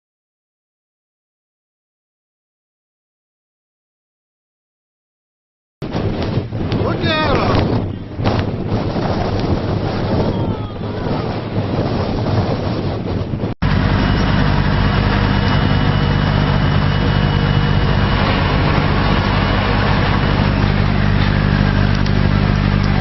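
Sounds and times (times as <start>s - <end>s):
wind noise on microphone: 5.8s - 23.0s
engine running steadily: 13.6s - 23.0s.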